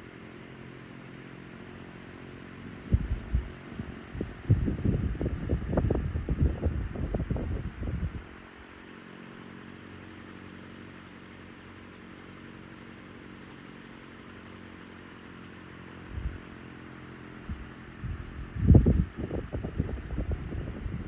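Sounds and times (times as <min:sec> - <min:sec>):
table fan running: 0:00.0 - 0:21.0
airflow buffeting microphone: 0:02.6 - 0:08.7, 0:16.0 - 0:16.5, 0:17.4 - 0:21.0.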